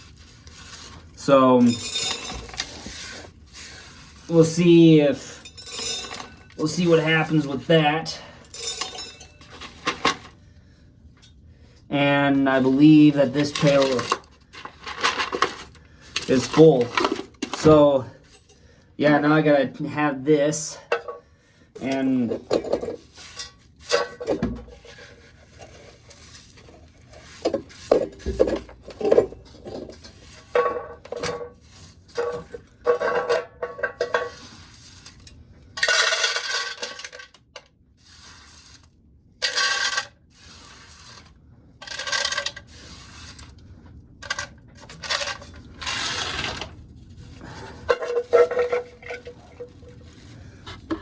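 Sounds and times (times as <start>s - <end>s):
corn cobs rattling: 0.1s - 7.8s, 12.0s - 18.2s, 35.8s - 37.4s, 39.4s - 43.5s, 44.2s - 46.8s, 47.4s - 51.0s
metal pail clattering: 0.8s - 3.3s, 4.3s - 7.7s, 21.8s - 26.0s, 26.6s - 34.6s, 35.8s - 37.4s, 47.4s - 51.0s.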